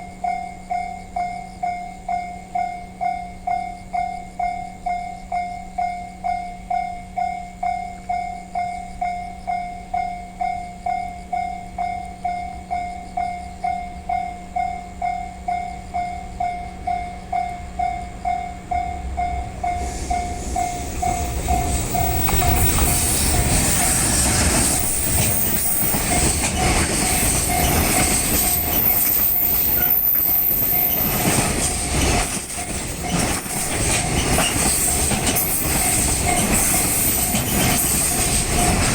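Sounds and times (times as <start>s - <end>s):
level crossing warning bell: 0.0s - 38.9s
train rumbling: 0.0s - 38.9s
high squeal: 15.5s - 31.8s
wheels clacking over rail joints: 16.3s - 38.9s.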